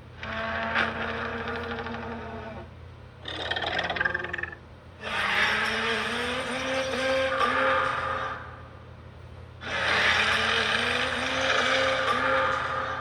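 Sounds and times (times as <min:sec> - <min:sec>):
rough noisy sound effect: 0:09.6 - 0:13.0.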